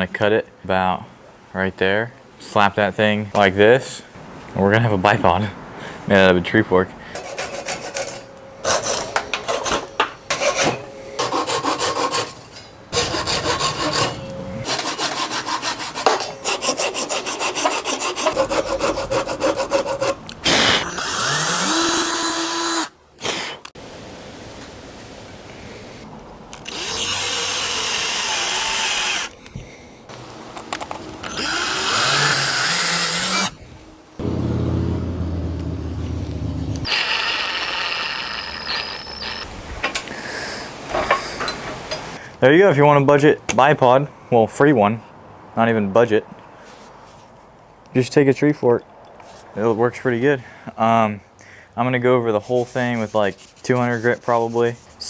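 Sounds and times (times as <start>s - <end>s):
hand saw cutting branch: 7.2s - 22.9s.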